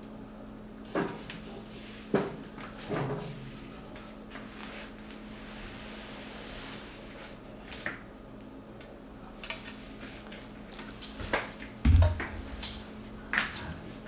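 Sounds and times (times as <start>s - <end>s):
faint steady hum: 0.0s - 14.0s
heavy thump: 11.8s - 12.8s.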